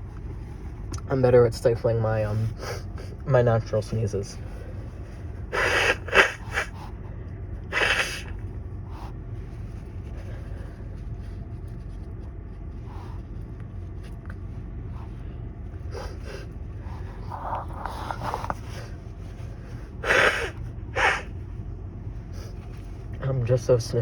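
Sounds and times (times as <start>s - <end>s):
person sneezing: 5.5s - 6.8s, 7.7s - 8.4s, 20.0s - 21.3s
short catches of breath: 7.7s - 8.4s, 20.0s - 21.3s.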